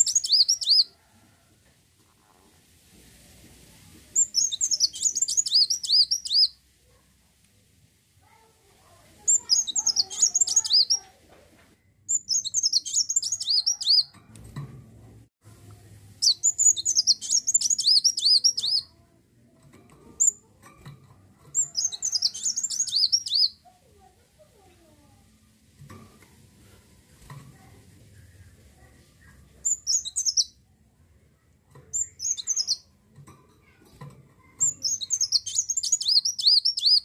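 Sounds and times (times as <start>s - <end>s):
sunbird twittering song: 0.0s - 0.9s, 4.2s - 6.6s, 9.3s - 11.0s, 12.1s - 14.1s, 16.2s - 18.9s, 21.6s - 23.6s, 29.6s - 30.6s, 32.0s - 32.8s, 34.6s - 37.0s.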